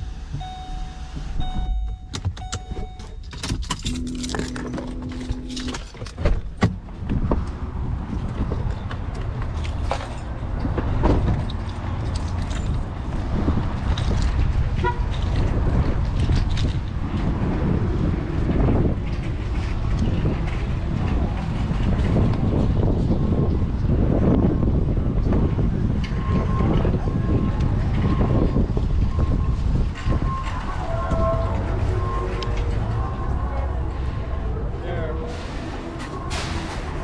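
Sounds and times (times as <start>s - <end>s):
road and engine rumble: 0.0s - 37.0s
sharp clicks and knocks: 1.2s - 7.6s.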